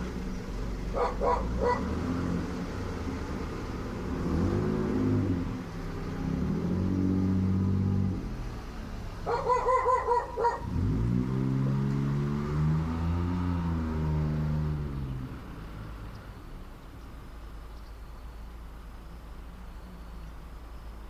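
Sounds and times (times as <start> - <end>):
car engine revving: 0.0 - 16.7
dog barking: 0.9 - 1.9, 9.2 - 10.7.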